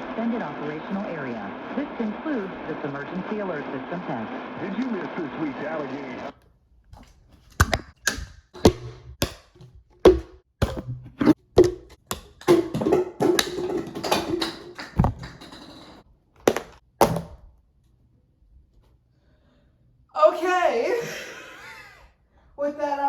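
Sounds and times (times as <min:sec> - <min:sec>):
knocks and taps: 0:07.6 - 0:17.2.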